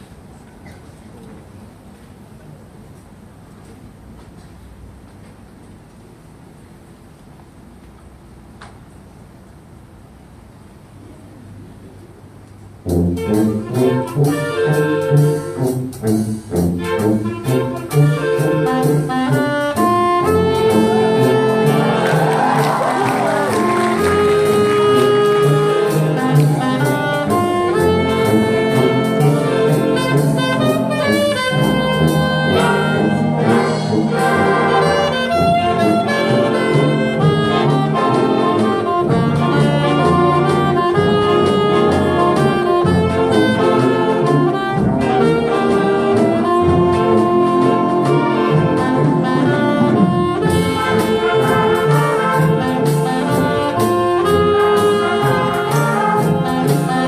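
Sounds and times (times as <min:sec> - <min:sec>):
concert band playing jazzy music: 0:12.7 - 0:57.0
solo saxophone: 0:16.7 - 0:57.0.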